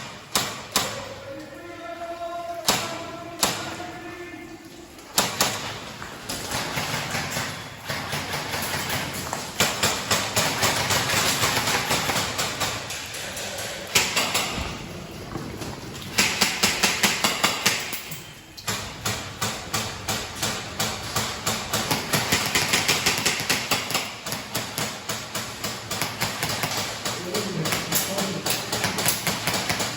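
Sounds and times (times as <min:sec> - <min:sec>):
airsoft guns rapid firing: 0:21.4 - 0:27.3.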